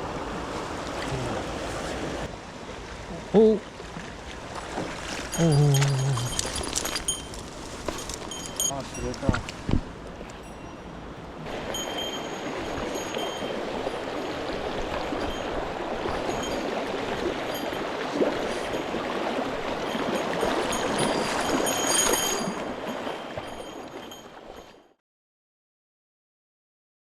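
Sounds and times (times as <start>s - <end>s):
stream rushing over rocks: 3.7s - 10.6s, 11.4s - 24.7s.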